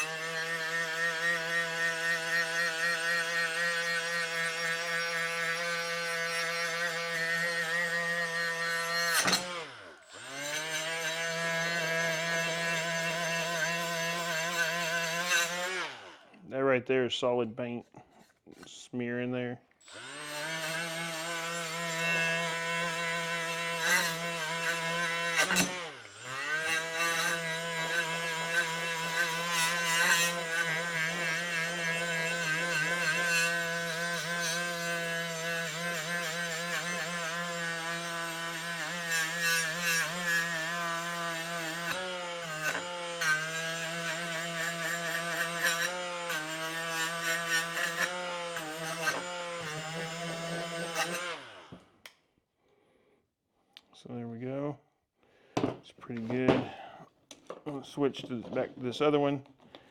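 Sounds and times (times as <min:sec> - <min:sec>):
power tool stripping rust: 0:00.0 - 0:16.4, 0:19.8 - 0:52.2.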